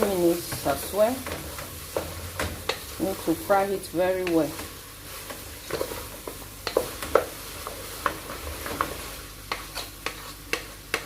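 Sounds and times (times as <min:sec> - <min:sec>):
food sizzling in oil: 0:00.0 - 0:11.0
utensil scraping a pot: 0:07.6 - 0:10.7.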